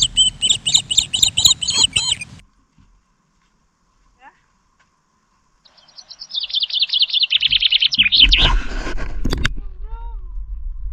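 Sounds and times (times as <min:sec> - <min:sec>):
songbird singing: 0:00.0 - 0:02.4, 0:03.9 - 0:08.5.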